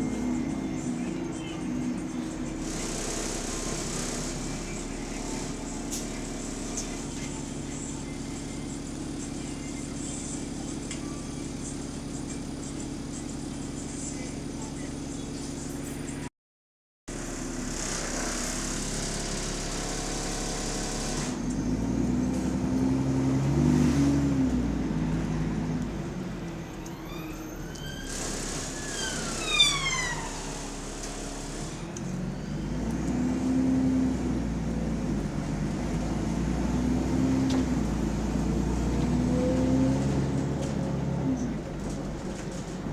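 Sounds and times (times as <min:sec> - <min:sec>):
bus engine running: 0:00.0 - 0:16.3, 0:17.1 - 0:42.9
siren rising: 0:28.7 - 0:30.8.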